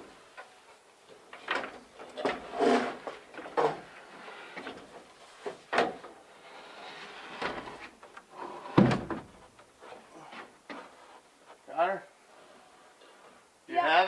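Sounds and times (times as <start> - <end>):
heavy wooden thud: 8.8 - 9.4.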